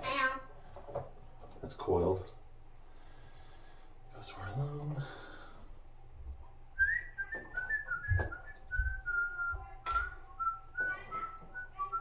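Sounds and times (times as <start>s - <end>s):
person whistling a tune: 6.8s - 9.6s, 10.4s - 12.0s.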